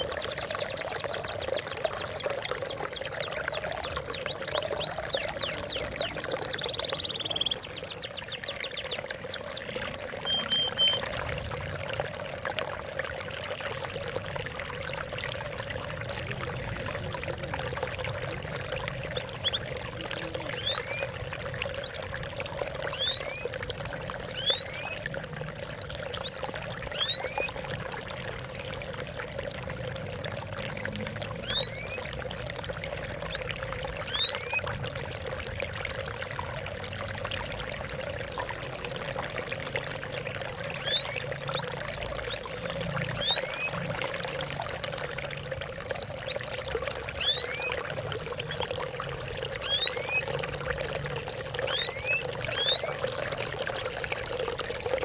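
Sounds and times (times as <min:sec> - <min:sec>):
birds calling: 0:00.0 - 0:11.1, 0:15.1 - 0:23.5, 0:51.6 - 0:53.1
water trickling and splashing: 0:00.0 - 0:55.0.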